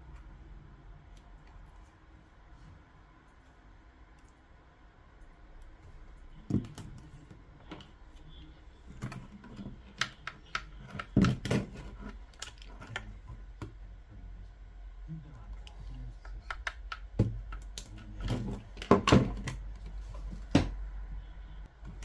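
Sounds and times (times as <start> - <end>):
plastic speaker clicks and knocks: 16.5 - 19.6.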